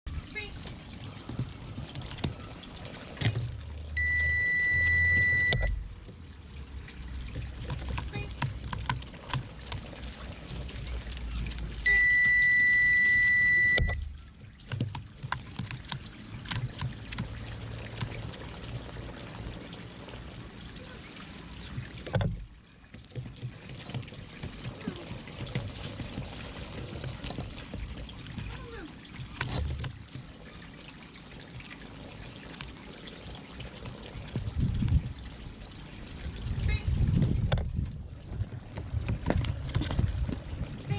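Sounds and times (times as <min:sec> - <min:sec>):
water trickling: 0:00.1 - 0:40.9
short high beep: 0:04.0 - 0:05.8, 0:11.9 - 0:14.2
high electronic test tone: 0:04.0 - 0:05.9, 0:11.9 - 0:14.2.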